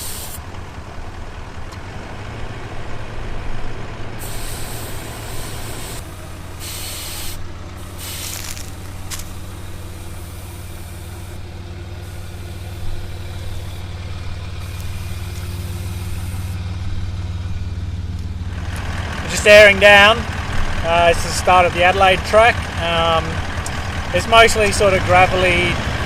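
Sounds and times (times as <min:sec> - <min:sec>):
air hissing from tyres: 0:00.0 - 0:00.6, 0:04.1 - 0:17.1
diesel engine idling: 0:00.0 - 0:26.0.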